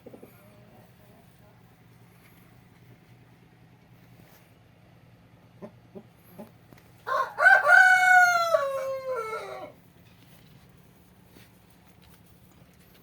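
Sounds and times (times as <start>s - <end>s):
faint low hum: 0.0s - 13.0s
rooster crowing: 7.0s - 9.8s.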